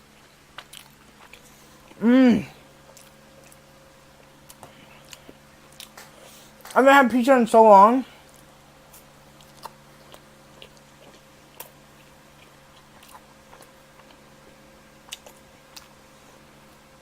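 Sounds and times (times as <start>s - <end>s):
faint steady hum: 0.0s - 17.0s
mouth chewing: 0.2s - 3.6s, 4.2s - 6.1s, 8.3s - 14.2s, 15.0s - 16.0s.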